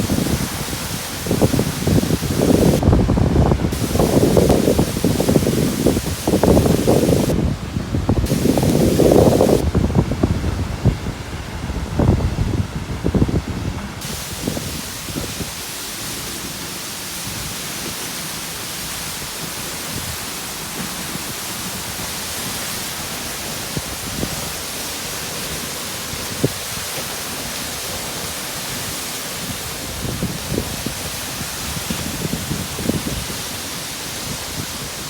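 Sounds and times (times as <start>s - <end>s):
waterfall rushing: 0.0s - 7.5s, 8.1s - 9.6s, 14.0s - 35.0s
wind buffeting microphone: 0.0s - 15.8s, 29.4s - 35.0s.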